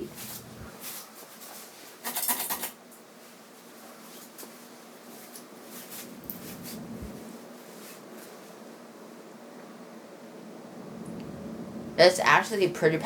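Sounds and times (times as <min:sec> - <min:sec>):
ceiling fan motor hum: 0:00.0 - 0:13.0
loud scratchy rustle: 0:05.2 - 0:08.4
rush of air: 0:05.8 - 0:07.4, 0:10.4 - 0:12.1.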